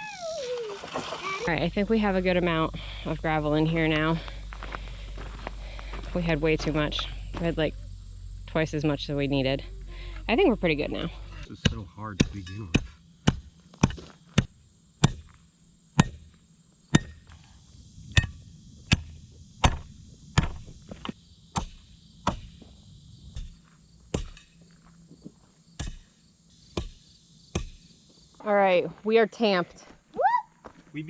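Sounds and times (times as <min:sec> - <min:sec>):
hand tamper striking gravel: 0:11.5 - 0:15.4, 0:23.3 - 0:24.6.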